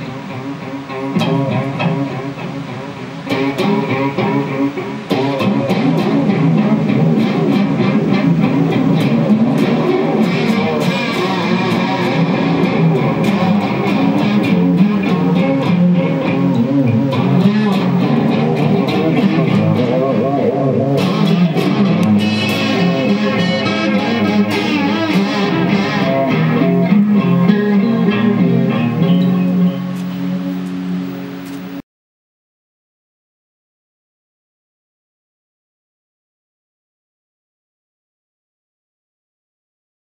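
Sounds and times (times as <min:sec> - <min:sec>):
guitar music: 0:00.0 - 0:31.8
bass line: 0:05.2 - 0:31.8.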